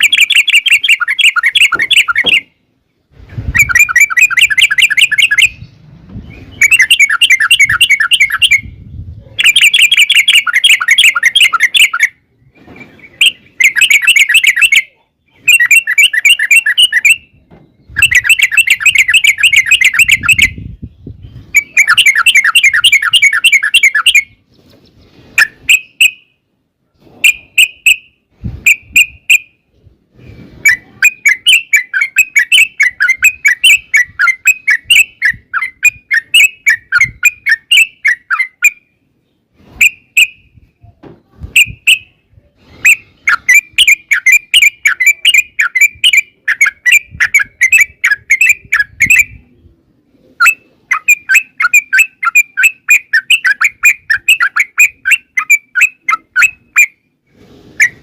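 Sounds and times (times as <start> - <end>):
bird singing bubbling notes: 0.0 - 2.6, 3.6 - 8.8, 13.0 - 24.4.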